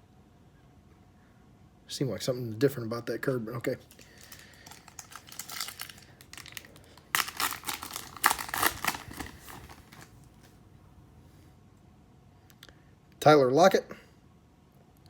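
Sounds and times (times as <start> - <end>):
trading card packaging crinkling: 3.8 - 10.6.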